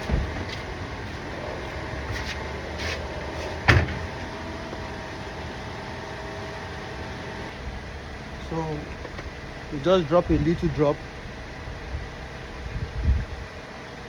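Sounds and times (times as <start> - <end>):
background hum: 0.0 - 14.0.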